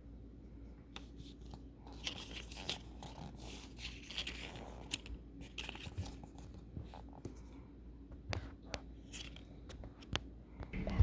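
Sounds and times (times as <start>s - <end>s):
plastic packaging crinkling: 1.9s - 6.6s.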